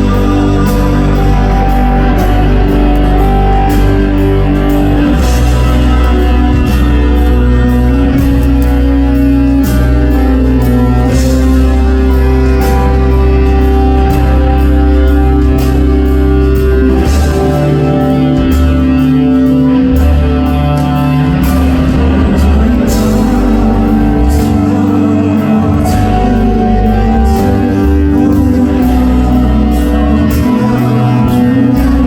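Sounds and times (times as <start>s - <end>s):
live band playing: 0.0s - 32.0s
person singing: 0.0s - 32.0s.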